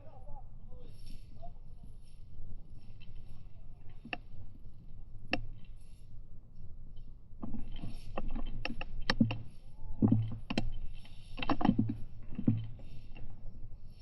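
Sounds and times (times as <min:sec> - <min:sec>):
sharp clicks and knocks: 0:05.3 - 0:05.7, 0:07.4 - 0:13.4.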